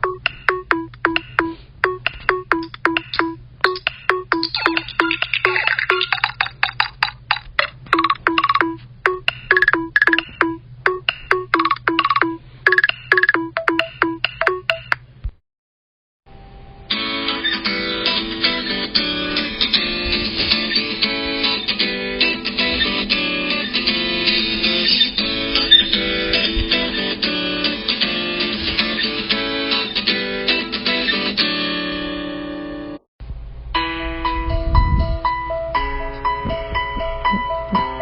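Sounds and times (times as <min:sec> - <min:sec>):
acoustic guitar ringtone: 0:00.0 - 0:15.0, 0:24.8 - 0:26.4.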